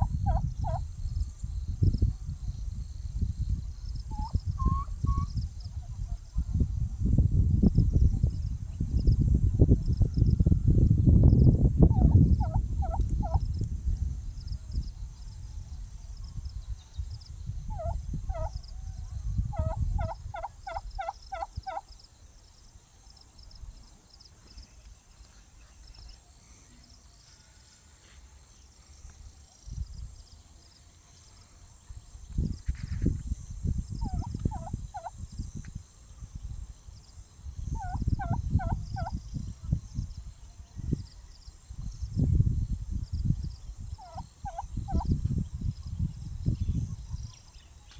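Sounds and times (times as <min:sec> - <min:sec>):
turkey gobbling: 0:00.0 - 0:00.8, 0:04.1 - 0:06.1, 0:11.9 - 0:13.4, 0:17.7 - 0:18.6, 0:19.5 - 0:21.8, 0:34.0 - 0:35.1, 0:37.8 - 0:39.1, 0:44.0 - 0:45.0.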